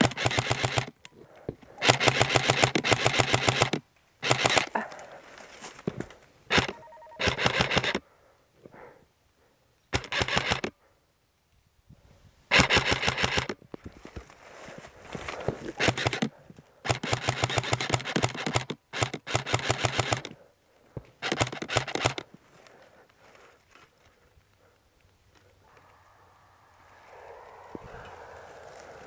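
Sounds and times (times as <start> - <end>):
airsoft gun firing bursts: 0.0 - 1.0, 1.8 - 4.7, 6.5 - 8.0, 10.0 - 10.7, 12.5 - 13.6, 15.8 - 20.4, 21.2 - 22.3.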